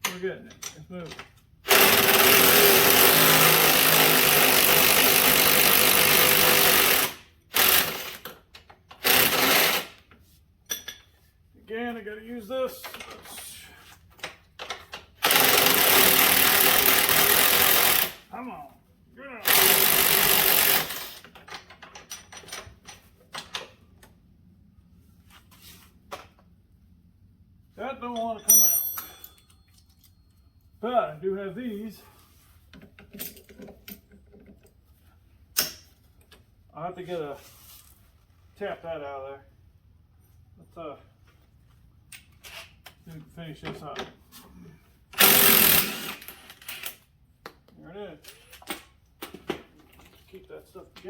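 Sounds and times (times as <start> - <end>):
handheld power tool running: 1.7 - 8.2, 9.0 - 10.0, 15.2 - 18.2, 19.4 - 21.2, 45.2 - 46.3.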